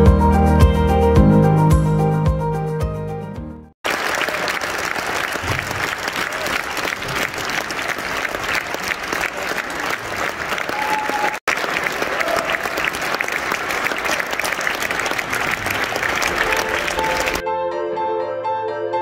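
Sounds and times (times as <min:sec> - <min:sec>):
audience applauding: 0:03.8 - 0:17.4.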